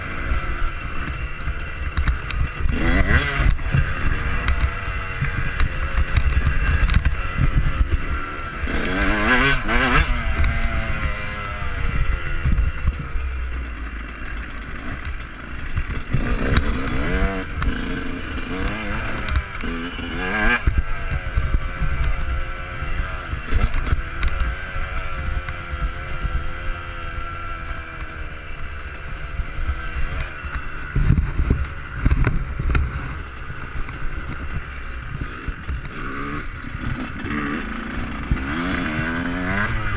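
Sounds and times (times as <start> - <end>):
wind rumble on microphone: 0.0 - 13.6, 29.0 - 39.9
motocross engine revving: 0.0 - 39.9.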